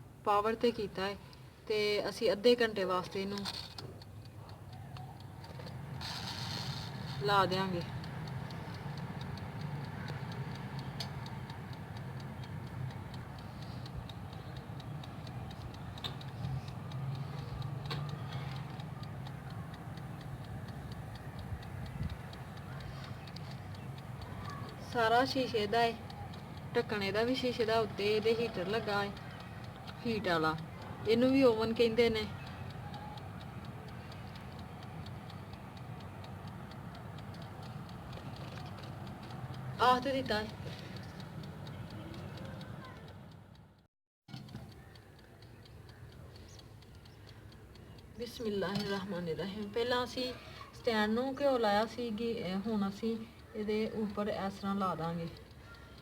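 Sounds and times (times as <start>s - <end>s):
wind-up timer ticking: 0.4s - 56.0s
oven humming: 6.9s - 43.6s.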